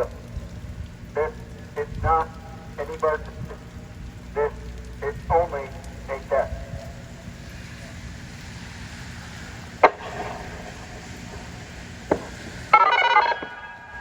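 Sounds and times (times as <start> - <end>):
outdoor warning siren: 0.0 - 14.0
rain and wind on microphone: 0.0 - 14.0.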